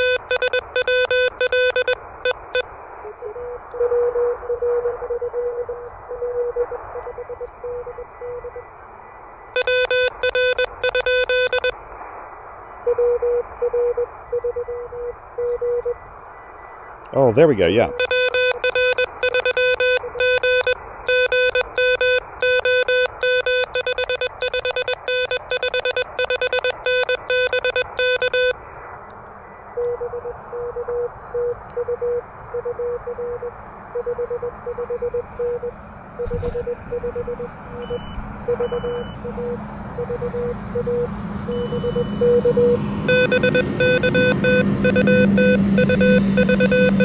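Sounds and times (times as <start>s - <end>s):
faint morse code reply: 0.0s - 5.8s, 9.6s - 11.8s, 17.1s - 28.6s, 29.8s - 40.9s, 41.5s - 47.0s
loud buzzy morse code sidetone: 0.0s - 8.6s, 9.6s - 11.8s, 17.6s - 28.6s, 29.8s - 47.0s
radio band hiss: 16.4s - 18.0s.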